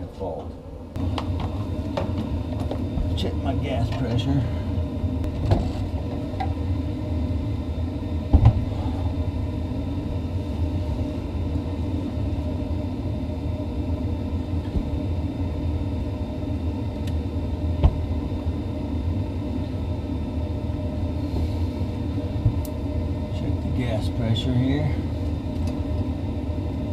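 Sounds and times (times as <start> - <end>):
furnace rumble and hum: 0.0 - 26.9.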